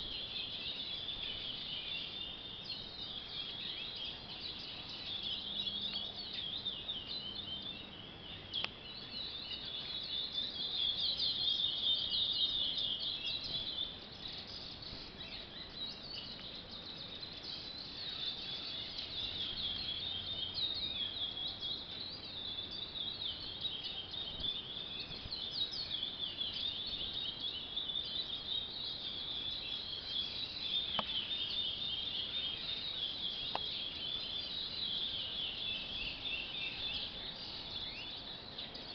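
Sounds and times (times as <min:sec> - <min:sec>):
finches singing: 0:00.0 - 0:38.9
faint clicks: 0:08.6 - 0:08.8, 0:33.5 - 0:33.7.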